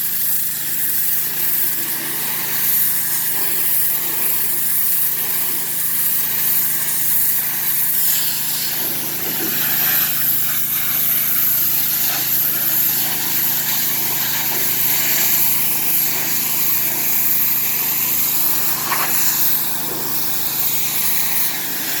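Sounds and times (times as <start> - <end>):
small engine running: 0.0 - 22.0
spray hissing: 0.0 - 22.0.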